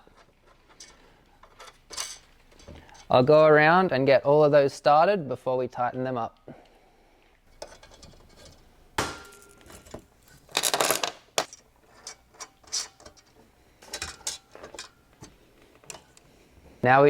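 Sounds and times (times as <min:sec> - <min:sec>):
washers and nuts clinking: 0:00.0 - 0:03.2, 0:07.5 - 0:16.8
metal rattle: 0:00.6 - 0:03.2, 0:07.5 - 0:16.2.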